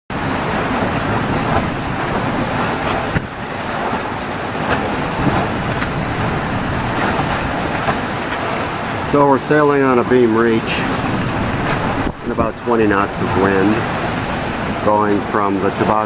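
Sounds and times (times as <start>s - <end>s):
wind rumbling on microphone: 0.1s - 9.1s, 9.8s - 14.9s
wind and water rushing: 0.1s - 16.0s.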